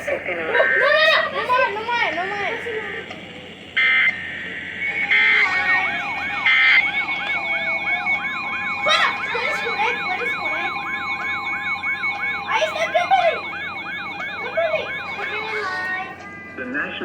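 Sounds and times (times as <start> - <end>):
electronic siren sweeping: 0.0 - 16.6
digital data tones: 3.8 - 17.0
electronic alert tones: 4.7 - 16.2.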